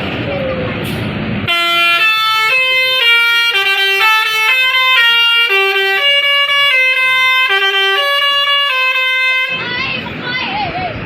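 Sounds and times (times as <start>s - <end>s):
musical air horn melody: 1.5s - 9.8s.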